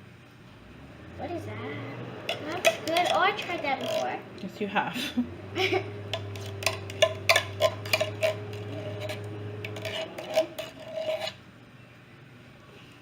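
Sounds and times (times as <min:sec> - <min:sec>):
low steady hum: 0:00.0 - 0:13.0
utensil scraping a pan: 0:06.0 - 0:11.4.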